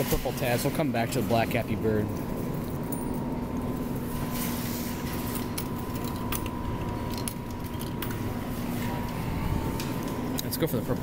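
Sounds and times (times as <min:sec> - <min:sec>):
machine and store hum: 0:00.0 - 0:11.0.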